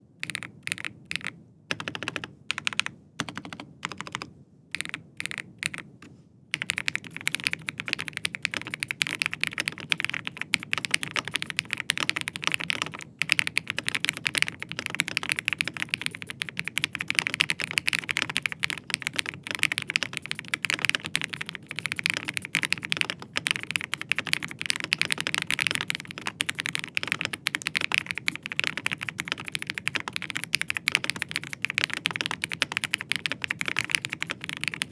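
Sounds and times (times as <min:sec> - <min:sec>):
keyboard typing: 0:00.2 - 0:34.9.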